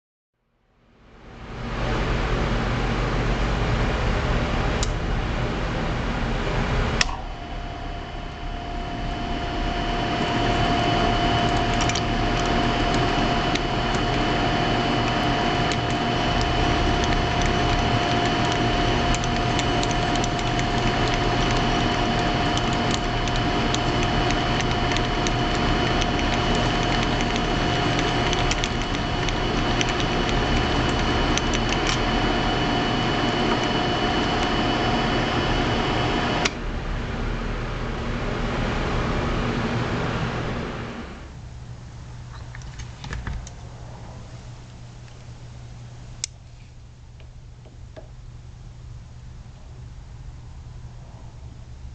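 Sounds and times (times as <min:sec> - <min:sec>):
machine tool whine: 0:06.9 - 0:36.7
metal cutting noise: 0:09.0 - 0:36.6
small clicks: 0:15.1 - 0:32.0.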